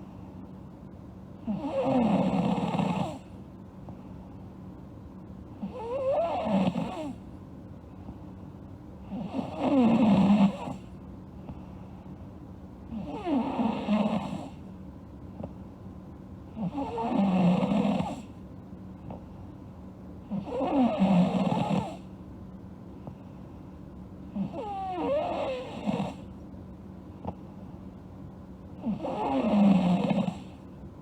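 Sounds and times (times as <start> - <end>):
girl snoring: 1.4 - 3.2, 5.6 - 7.2, 9.1 - 10.8, 12.9 - 14.5, 16.6 - 18.3, 20.3 - 22.0, 24.4 - 26.3, 28.8 - 30.5.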